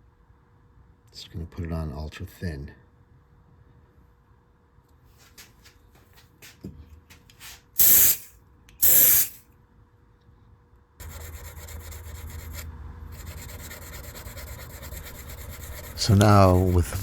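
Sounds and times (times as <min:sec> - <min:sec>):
short hissing sprays: 0:07.4 - 0:09.4
wet sanding rubbing: 0:13.2 - 0:17.0.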